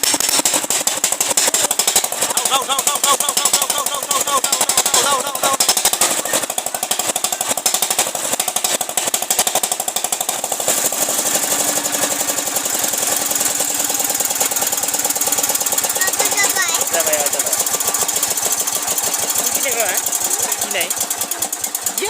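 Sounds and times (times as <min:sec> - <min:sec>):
small diesel pump engine knocking: 0:00.0 - 0:22.0.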